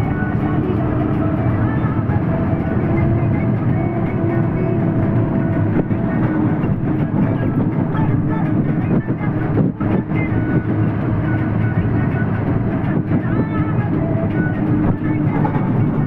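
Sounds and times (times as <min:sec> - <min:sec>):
diesel truck engine drone: 0:00.0 - 0:16.0
truck cab rattling: 0:00.0 - 0:16.0.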